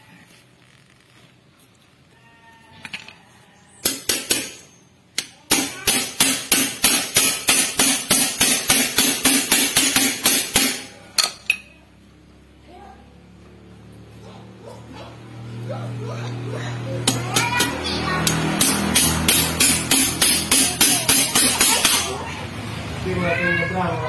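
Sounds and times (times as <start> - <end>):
hammer striking metal: 3.8 - 11.7, 17.0 - 22.1.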